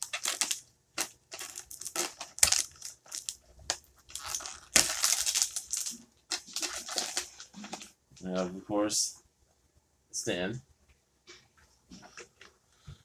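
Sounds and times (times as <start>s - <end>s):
plastic packaging crinkling: 0.0s - 8.5s.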